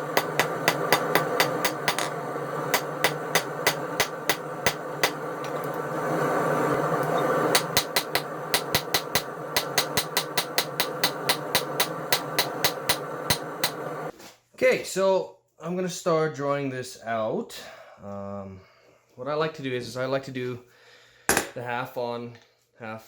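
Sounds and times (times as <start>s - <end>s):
steady background hum: 0.0s - 14.1s
hammer striking metal on anvil: 0.1s - 5.6s, 7.5s - 14.0s, 21.3s - 21.6s.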